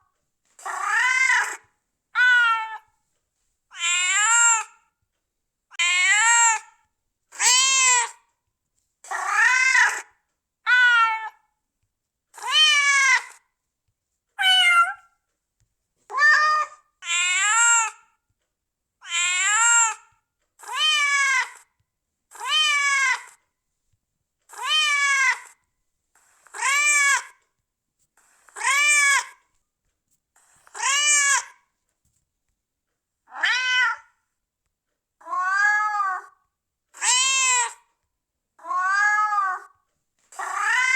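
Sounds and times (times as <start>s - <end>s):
cat meowing: 0.6s - 2.9s, 3.7s - 4.8s, 5.8s - 6.6s, 9.1s - 10.1s, 10.7s - 11.4s, 14.4s - 15.0s, 16.1s - 18.0s, 19.0s - 20.0s, 20.6s - 21.7s, 22.4s - 23.4s, 24.5s - 25.6s, 30.7s - 31.6s, 33.3s - 34.2s, 35.2s - 36.4s, 37.0s - 37.8s, 38.6s - 39.8s, 40.4s - 40.9s.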